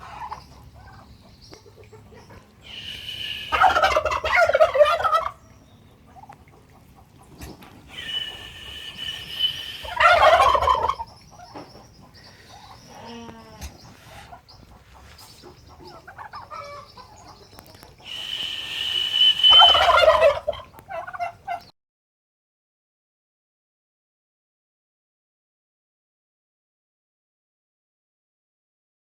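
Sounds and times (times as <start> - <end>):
soft turkey calls: 0.0 - 21.7
turkeys gobbling: 0.0 - 21.7
high whistle: 2.7 - 3.6, 7.9 - 10.0, 18.1 - 20.0.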